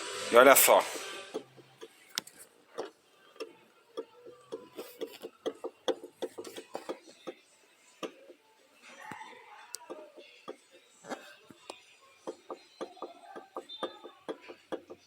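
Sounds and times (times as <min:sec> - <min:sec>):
pump pulley clicks and knocks: 0:01.3 - 0:07.4, 0:12.2 - 0:15.0.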